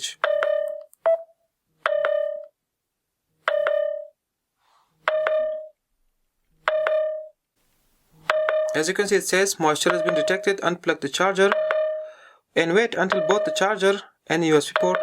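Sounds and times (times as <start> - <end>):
short pitched phone beep: 0.2 - 1.3.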